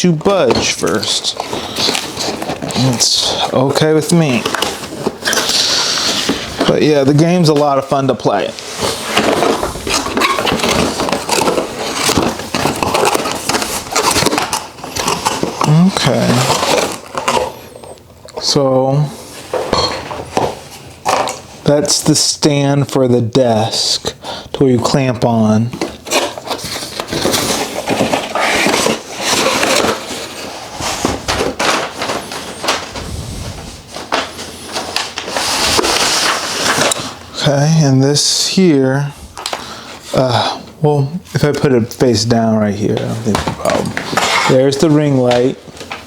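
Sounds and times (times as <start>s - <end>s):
packaging crinkling and rustling: 0.0s - 18.5s, 24.8s - 38.6s, 41.4s - 46.0s.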